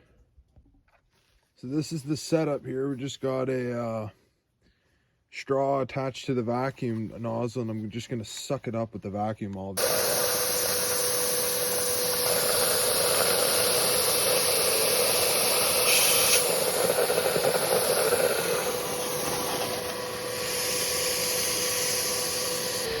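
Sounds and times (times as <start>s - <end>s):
liquid slurping up a straw: 9.8s - 23.0s
vacuum cleaner running: 9.8s - 23.0s.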